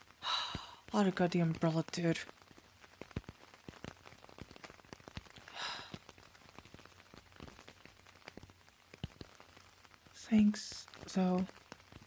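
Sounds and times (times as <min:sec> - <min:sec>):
rain tapping on an umbrella: 0:00.0 - 0:12.0
breathy exhale: 0:05.5 - 0:06.0.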